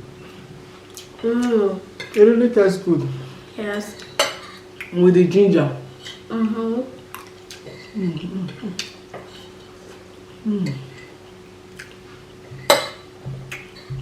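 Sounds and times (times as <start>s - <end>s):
spoons clinking against plates: 12.6s - 13.1s.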